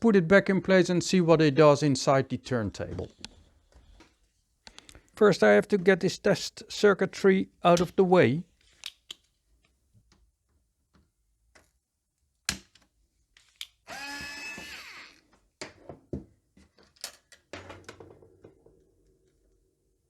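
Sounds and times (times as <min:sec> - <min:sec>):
clicks and knocks of parts handled: 0:08.6 - 0:10.2, 0:16.6 - 0:17.5.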